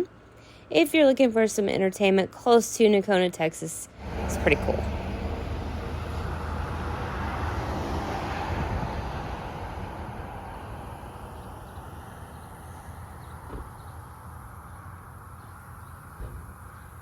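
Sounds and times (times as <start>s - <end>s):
road vehicle passing by: 4.0s - 17.0s.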